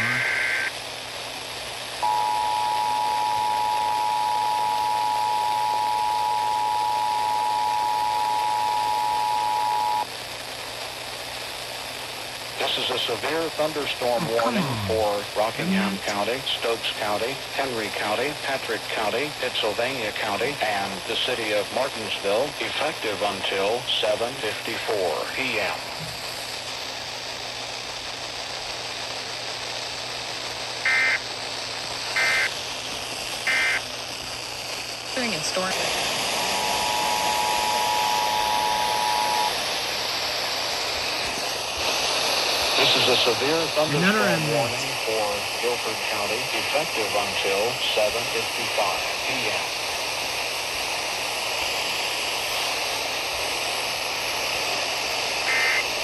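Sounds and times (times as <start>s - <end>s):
broadcast hiss: 0.0s - 56.0s.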